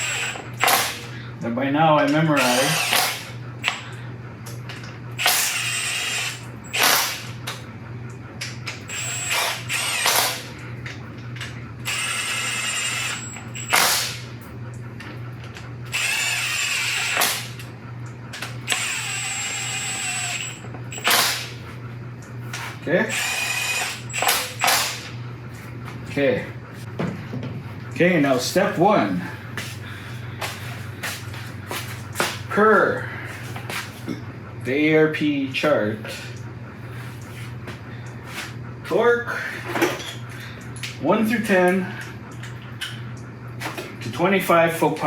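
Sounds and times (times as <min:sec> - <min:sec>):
impact wrench bursts: 0:00.0 - 0:01.1, 0:02.4 - 0:03.8, 0:05.2 - 0:07.4, 0:08.7 - 0:10.5, 0:11.8 - 0:14.3, 0:15.9 - 0:17.7, 0:18.7 - 0:21.6, 0:23.1 - 0:25.1
steady low hum: 0:00.0 - 0:45.0.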